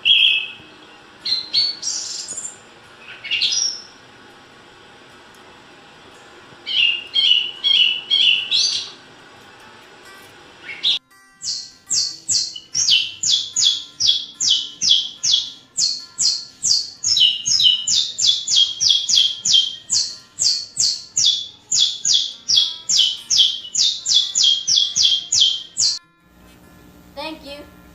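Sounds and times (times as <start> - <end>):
songbird chirps: 0.0 - 4.0, 6.6 - 9.0, 10.6 - 26.0
songbird descending high notes: 6.6 - 9.0, 10.6 - 26.0.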